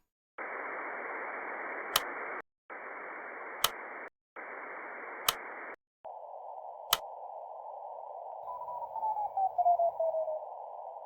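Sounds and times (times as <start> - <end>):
static hiss bursts: 0.4 - 5.8
sharp tick: 1.9 - 2.1.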